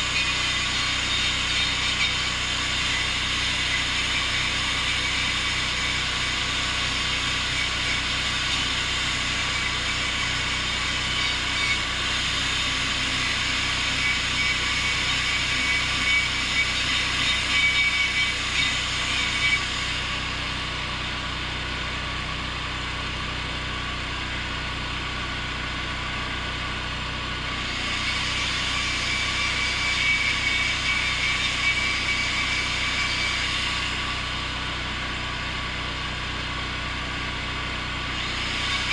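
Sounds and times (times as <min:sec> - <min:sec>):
welding arc crackling and hissing: 0:00.0 - 0:19.5.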